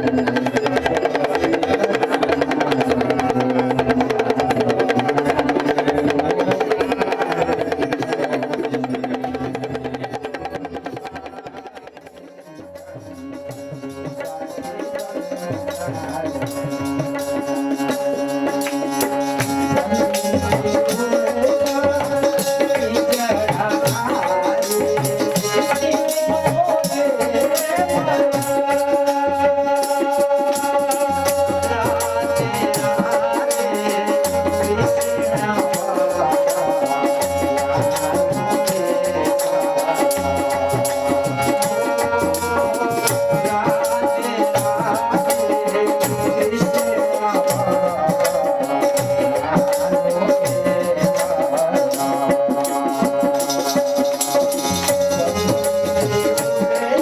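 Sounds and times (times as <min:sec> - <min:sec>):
hand drum: 0:00.0 - 0:57.0
jingling rattle percussion: 0:12.0 - 0:57.0.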